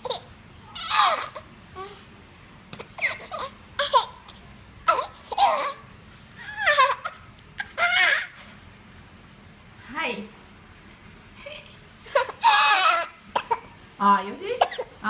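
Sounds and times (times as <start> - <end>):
baby fake coughing: 0.0 - 0.3, 2.7 - 5.8, 12.1 - 13.8, 14.6 - 15.0
baby squealing cries: 0.0 - 1.4, 3.0 - 4.2, 4.9 - 5.8, 6.4 - 8.4, 12.1 - 13.2.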